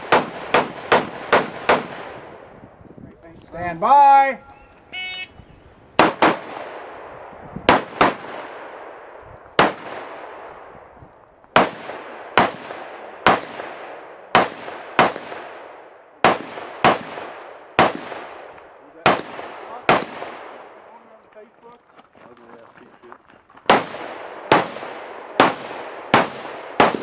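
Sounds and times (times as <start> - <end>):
gunshots with echo: 0.0 - 2.4, 6.0 - 10.9, 11.5 - 20.7, 23.7 - 27.0.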